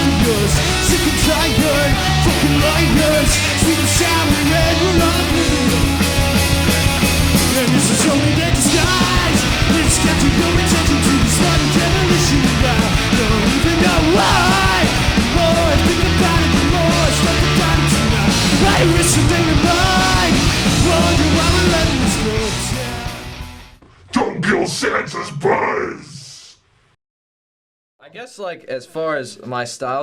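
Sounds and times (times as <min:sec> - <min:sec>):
person shouting singing: 0:00.0 - 0:05.8, 0:07.5 - 0:23.2
punk rock band playing: 0:00.0 - 0:23.8.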